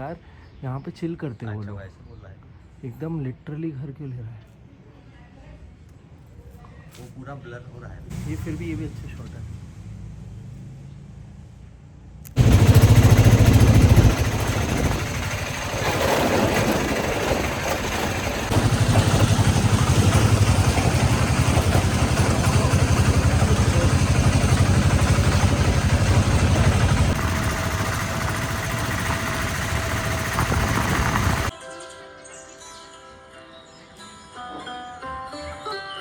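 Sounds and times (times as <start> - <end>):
small engine pulsing: 12.3 - 31.5.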